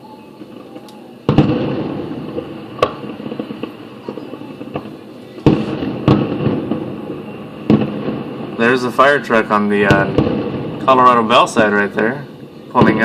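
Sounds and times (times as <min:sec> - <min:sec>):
loud fireworks boom: 0:00.0 - 0:13.0
fireworks pops and crackles: 0:00.2 - 0:13.0.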